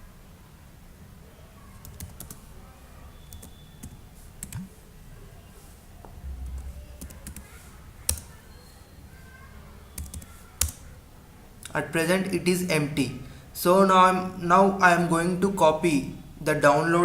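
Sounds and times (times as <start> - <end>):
computer keyboard clicks: 1.8 - 2.4, 3.3 - 4.7, 7.0 - 7.5, 8.1 - 8.3, 10.0 - 10.8.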